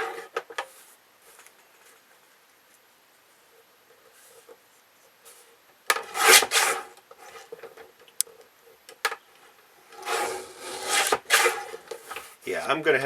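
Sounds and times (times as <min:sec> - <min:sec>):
paper cutter swiping through paper: 0:10.0 - 0:11.9.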